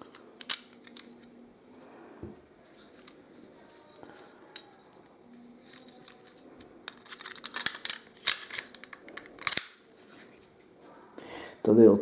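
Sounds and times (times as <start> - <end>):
metal parts scraping: 0.0 - 1.2, 2.7 - 10.5
handling of pistol: 0.0 - 1.4, 2.8 - 10.4.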